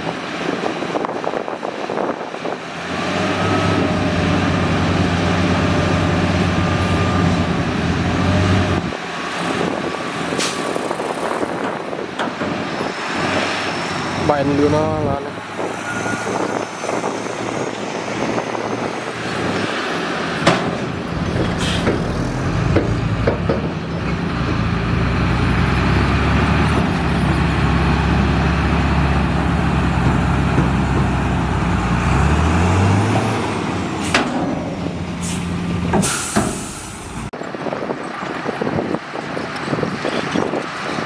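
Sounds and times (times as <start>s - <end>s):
diesel truck engine under load: 0.0s - 41.0s
air brake hiss: 10.4s - 10.9s, 21.5s - 22.0s, 35.2s - 37.3s
sharp knocks: 20.4s - 23.8s.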